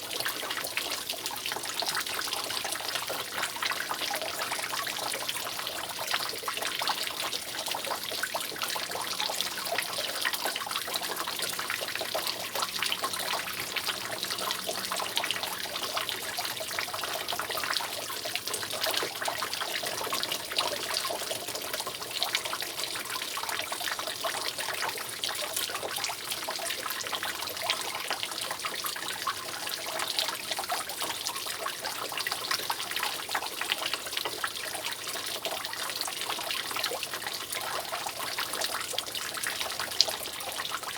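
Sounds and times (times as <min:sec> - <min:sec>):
water dripping and trickling: 0:00.0 - 0:40.9.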